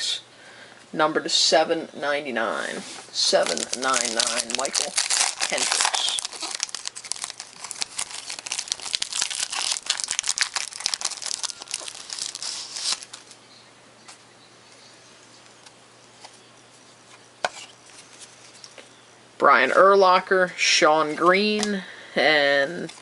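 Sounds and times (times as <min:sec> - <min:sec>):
wrapper tearing and crinkling: 0:03.3 - 0:13.4.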